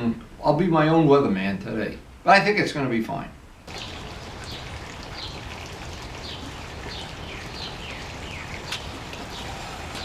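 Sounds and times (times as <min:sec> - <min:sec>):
bird chirping: 0:03.7 - 0:10.0
running water hiss: 0:03.7 - 0:10.0.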